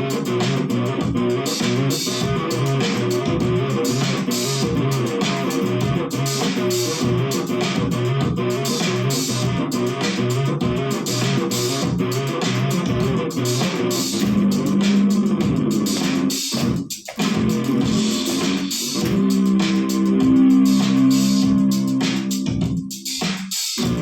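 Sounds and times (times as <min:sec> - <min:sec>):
electric bass guitar plucked notes: 0:11.8 - 0:22.8.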